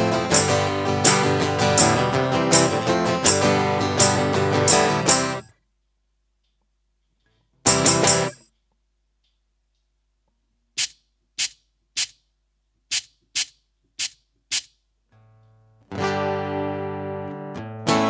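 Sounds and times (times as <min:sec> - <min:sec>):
guitar chord strummed: 0:00.0 - 0:05.4, 0:07.7 - 0:08.4, 0:15.8 - 0:18.0.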